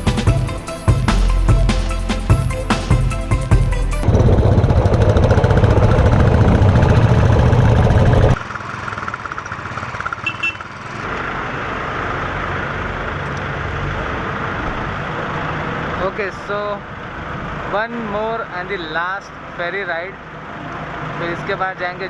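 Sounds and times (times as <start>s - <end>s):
engine throbbing: 0.0s - 17.7s
steady engine hum: 0.0s - 22.0s.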